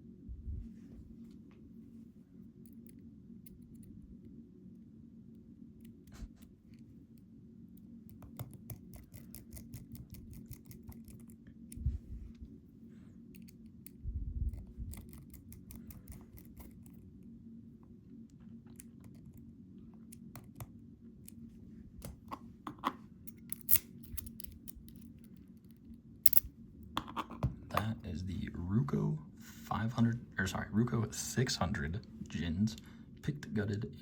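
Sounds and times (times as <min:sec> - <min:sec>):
steady low hum: 0:00.0 - 0:34.0
lock and key clicking: 0:23.3 - 0:25.1, 0:26.3 - 0:27.2.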